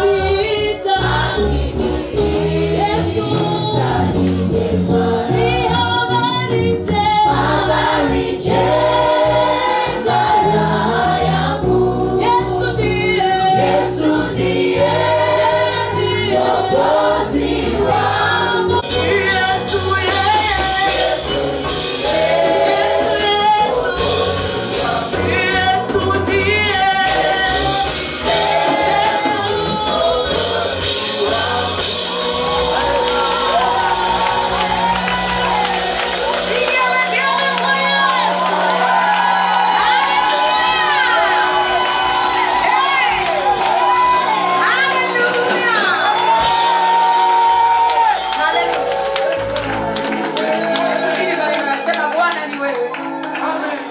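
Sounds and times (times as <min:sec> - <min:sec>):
choir singing a gospel hymn: 0:00.0 - 0:52.1, 0:53.0 - 0:53.9
band accompaniment: 0:00.0 - 0:53.9
high percussion: 0:18.8 - 0:50.3.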